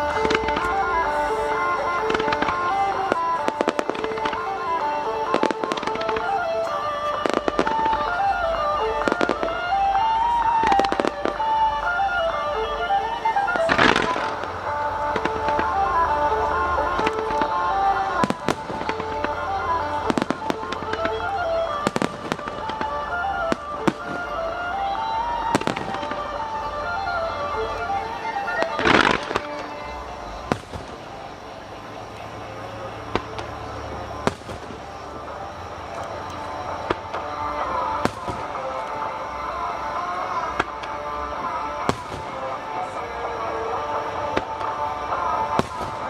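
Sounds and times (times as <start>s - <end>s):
fireworks bangs: 0.0s - 46.0s
melodic music: 0.0s - 46.0s.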